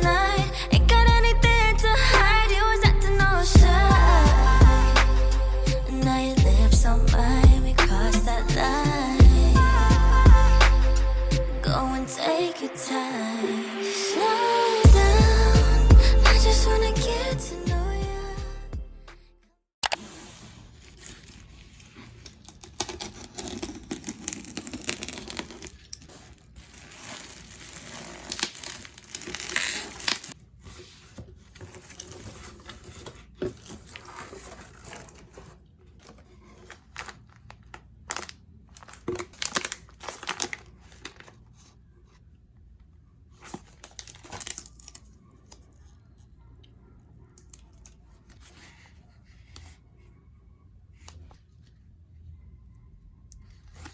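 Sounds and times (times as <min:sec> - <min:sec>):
packaging crinkling and tearing: 0:21.1 - 0:30.4, 0:33.6 - 0:41.6, 0:43.6 - 0:45.9.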